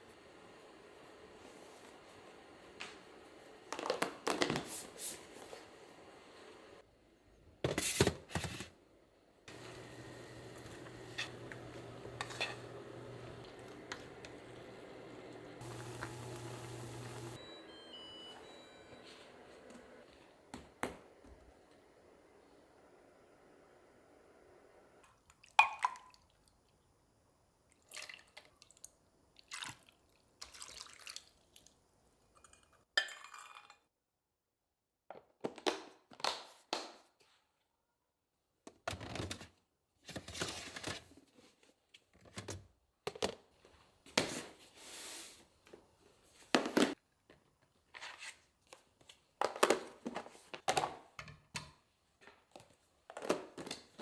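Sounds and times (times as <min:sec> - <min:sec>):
water dripping and splashing: 0:27.8 - 0:31.7.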